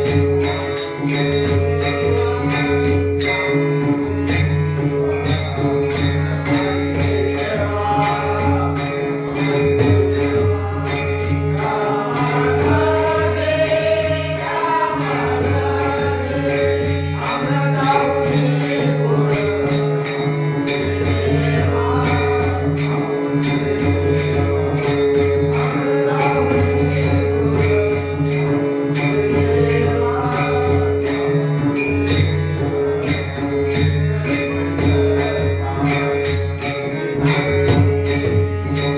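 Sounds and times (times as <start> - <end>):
jingling hand cymbals: 0.0 - 38.9
voices singing: 6.2 - 28.2.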